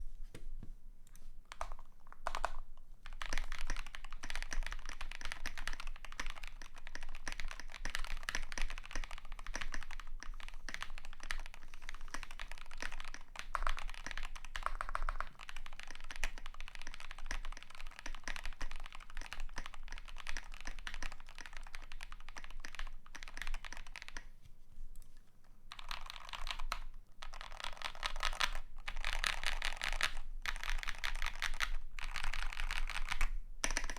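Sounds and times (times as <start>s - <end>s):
mechanical keyboard typing: 1.5s - 24.3s, 25.7s - 33.9s.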